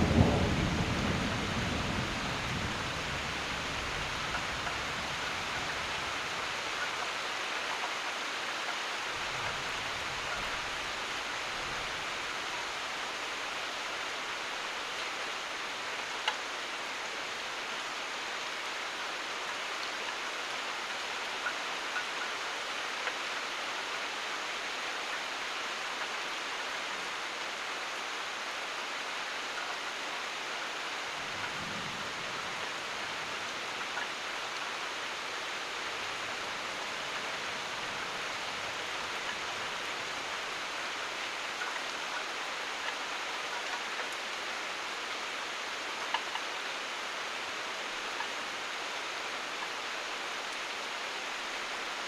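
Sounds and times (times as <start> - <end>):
thunder rumble: 0.0 - 5.4
steady rain: 0.0 - 52.0.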